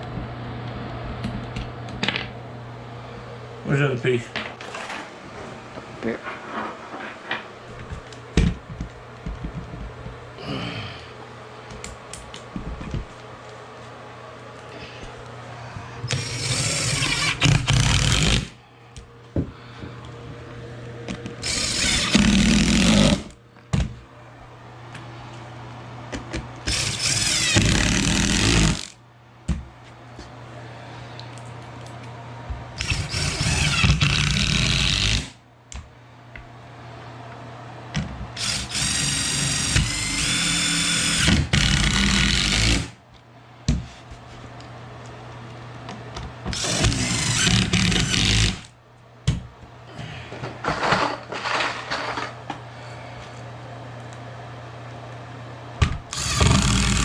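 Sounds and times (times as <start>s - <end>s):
power drill driving screws: 16.1s - 18.5s, 21.4s - 23.3s, 26.7s - 29.0s, 32.8s - 35.3s, 38.4s - 42.9s, 46.5s - 48.7s, 56.1s - 57.0s.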